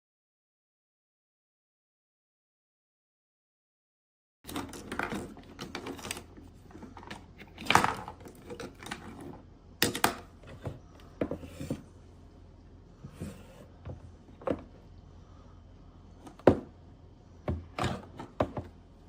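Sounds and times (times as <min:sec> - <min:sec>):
objects being handled: 0:04.5 - 0:12.0.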